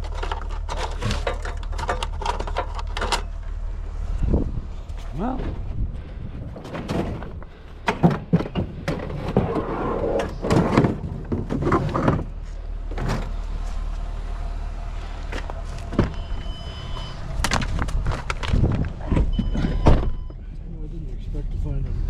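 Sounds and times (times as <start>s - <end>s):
junk knocking and clanking: 0.0s - 3.4s, 4.4s - 13.4s
vehicle idling rumble: 0.0s - 22.0s.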